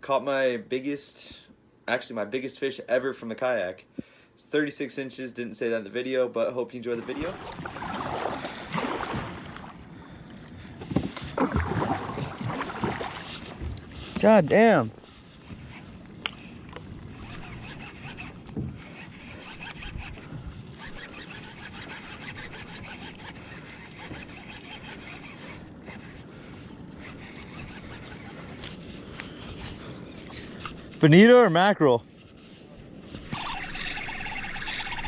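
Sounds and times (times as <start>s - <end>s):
wind: 0.0s - 35.0s
water noise around kayak: 6.8s - 31.0s, 32.0s - 35.0s.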